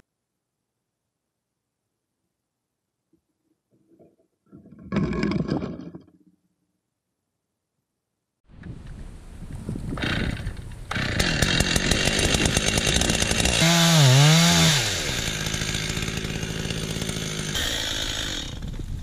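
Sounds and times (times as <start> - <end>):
chainsaw running: 10.0 - 19.0.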